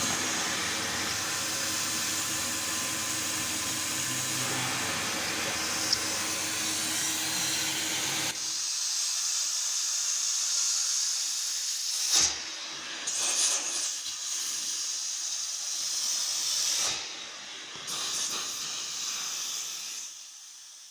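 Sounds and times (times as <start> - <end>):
high hissing spray: 0.0 - 8.4
cleaning machine motor drone: 0.0 - 8.5.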